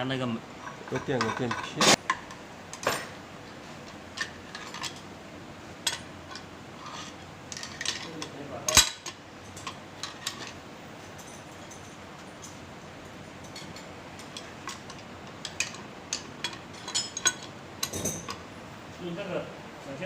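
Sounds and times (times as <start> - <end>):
metal tools clinking and knocking: 0.6 - 2.0, 4.2 - 5.0, 5.9 - 12.6, 13.4 - 18.4.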